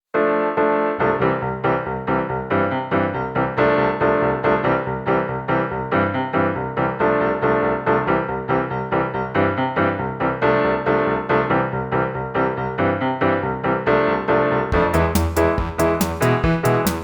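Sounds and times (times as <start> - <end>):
piano notes in quick stream: 13.0 - 17.0.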